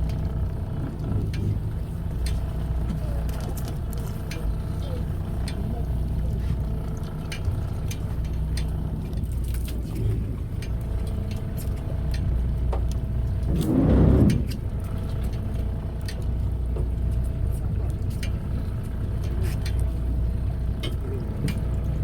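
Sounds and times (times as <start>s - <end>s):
boat engine droning: 0.0s - 22.0s
rushing water swell: 13.2s - 15.3s.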